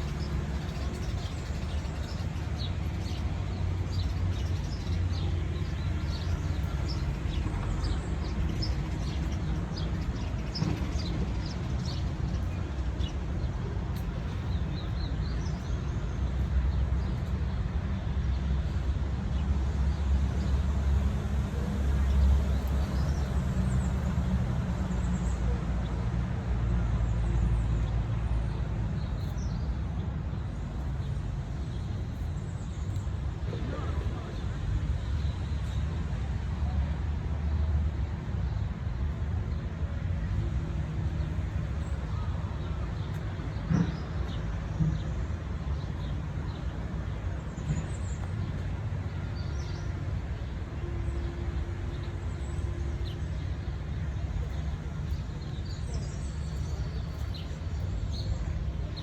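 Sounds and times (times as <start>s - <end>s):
small birds chirping: 0.0s - 17.6s, 52.2s - 59.0s
road traffic rumble: 0.0s - 59.0s.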